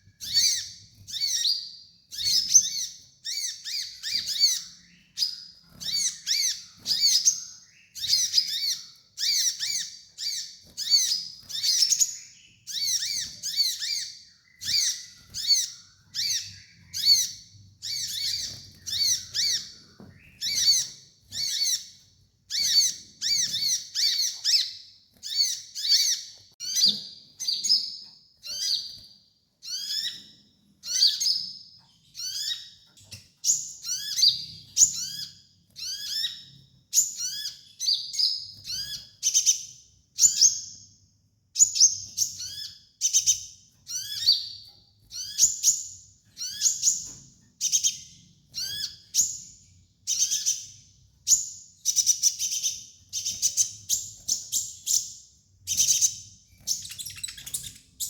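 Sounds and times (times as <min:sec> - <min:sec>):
sunbird chirping: 0:00.0 - 0:29.0, 0:41.6 - 0:58.0.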